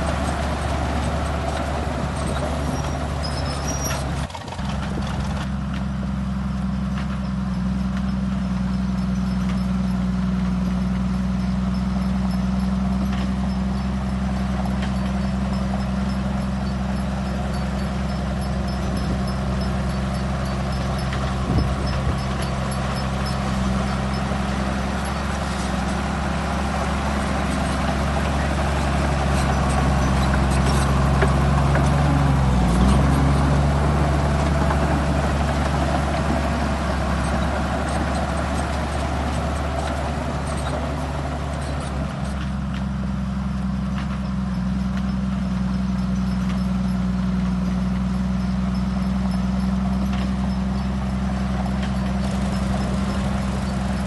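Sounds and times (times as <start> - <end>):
heavy diesel engine running: 0.0 - 54.0.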